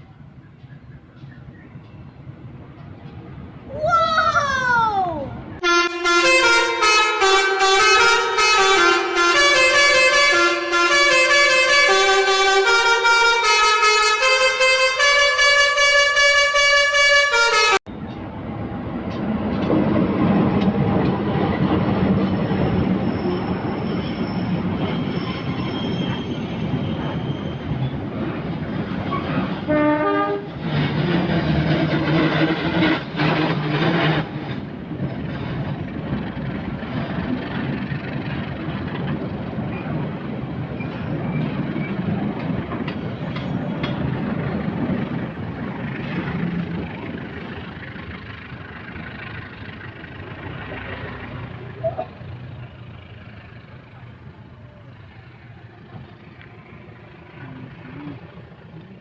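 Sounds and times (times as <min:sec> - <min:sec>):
train horn: 0:29.7 - 0:30.5.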